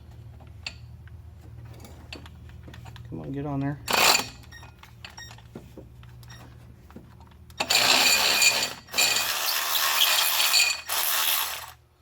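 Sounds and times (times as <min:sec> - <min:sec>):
cordless ratchet whirring: 0:07.6 - 0:11.8.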